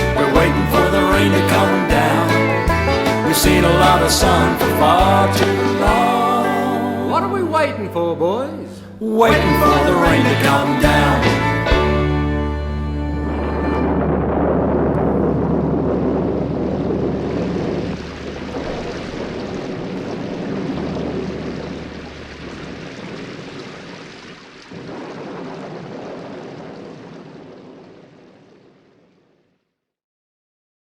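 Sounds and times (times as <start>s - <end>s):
low rumble: 0.0s - 7.5s, 9.4s - 29.0s
steady rain hiss: 13.1s - 29.4s.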